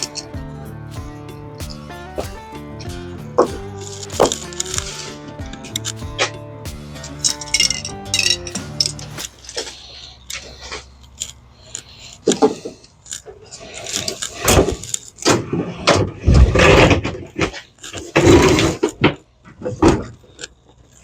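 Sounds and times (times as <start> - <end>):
sustained instrumental notes: 0.0 - 9.4.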